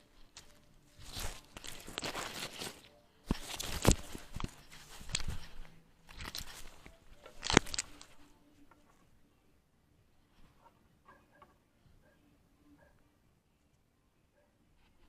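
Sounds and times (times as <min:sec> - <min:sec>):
fur and strap rubbing on microphone: 0:00.0 - 0:08.3.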